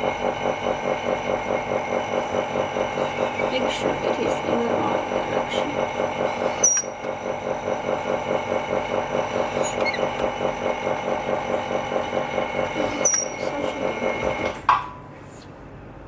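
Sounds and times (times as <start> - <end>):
small motor pulsing steadily: 0.0 - 14.5
brief high squeaks: 9.6 - 10.1.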